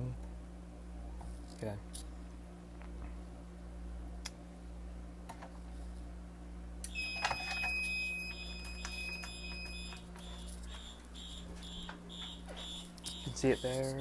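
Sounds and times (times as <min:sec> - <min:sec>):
fire alarm horn pulsing: 0:06.9 - 0:14.0
high electronic tone: 0:06.9 - 0:14.0.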